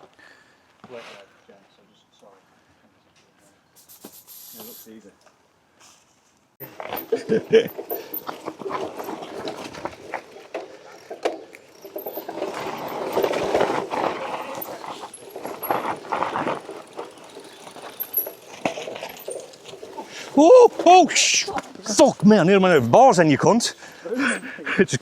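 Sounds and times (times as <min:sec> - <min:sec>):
bike tyres rumbling over rock: 0:06.6 - 0:22.2
bike rattling and clicking: 0:06.6 - 0:22.6.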